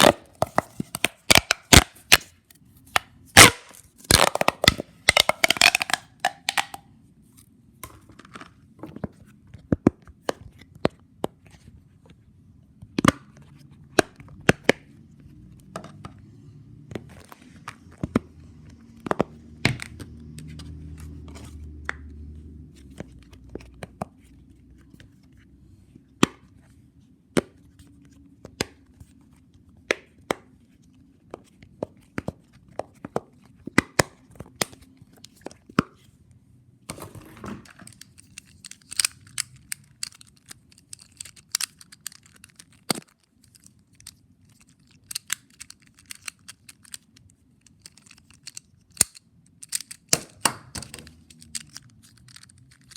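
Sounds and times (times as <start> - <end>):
plastic fidget toys clicking: 3.4 - 6.8, 37.7 - 52.9.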